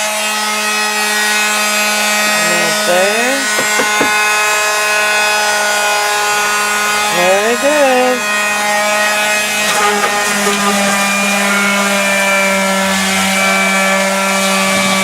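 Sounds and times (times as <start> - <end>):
electric sander on wall: 0.0 - 15.0.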